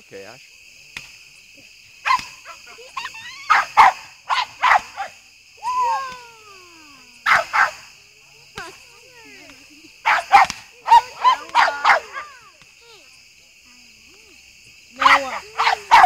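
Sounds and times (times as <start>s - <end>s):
dog barking: 2.0s - 2.8s, 3.5s - 5.2s, 7.2s - 7.9s, 10.0s - 12.4s, 15.0s - 16.0s.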